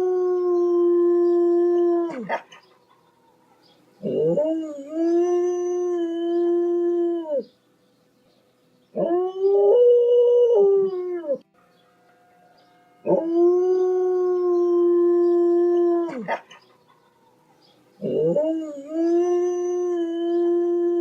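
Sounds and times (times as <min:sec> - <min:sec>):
dog howling: 0:04.0 - 0:07.4, 0:13.0 - 0:16.4, 0:18.0 - 0:21.0.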